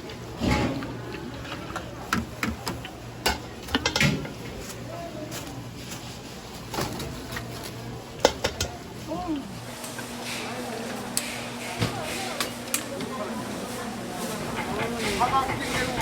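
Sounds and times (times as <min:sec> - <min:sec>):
kitchen utensils and dishes clinking: 0:00.4 - 0:04.7.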